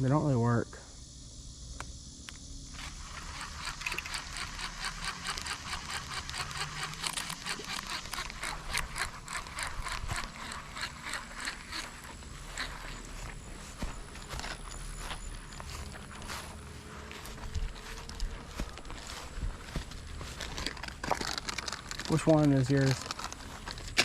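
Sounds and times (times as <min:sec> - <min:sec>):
fishing reel clicking: 0:02.7 - 0:13.3, 0:17.4 - 0:19.0, 0:20.0 - 0:24.0.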